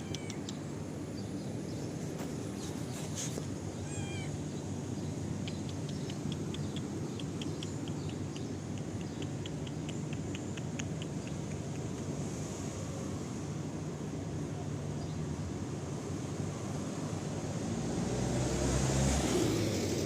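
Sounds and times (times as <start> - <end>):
cat meowing: 0.0 - 0.5, 3.8 - 4.4
soft quick ticks: 0.1 - 0.6.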